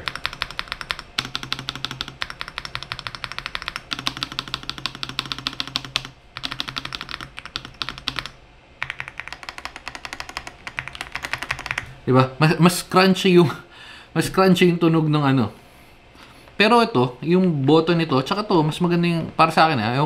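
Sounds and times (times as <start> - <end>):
mechanical keyboard typing: 0.0 - 11.9.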